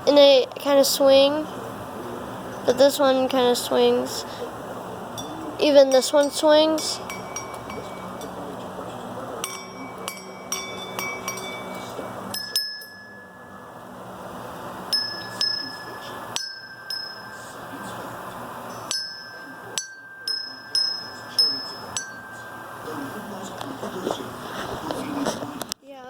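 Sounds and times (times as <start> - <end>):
steady background hiss: 0.0 - 26.0
small bells clinking: 5.1 - 24.5.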